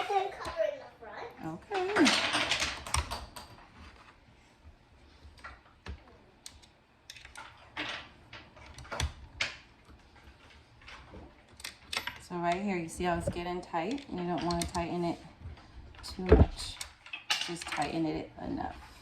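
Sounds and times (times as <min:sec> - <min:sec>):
wooden table parts clicking: 0:10.8 - 0:12.2.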